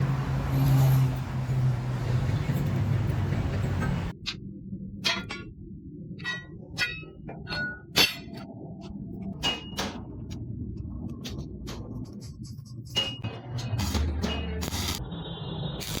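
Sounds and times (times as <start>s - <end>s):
hammer clanging on steel: 5.0s - 5.5s, 6.2s - 8.4s, 9.4s - 10.1s, 13.0s - 14.8s.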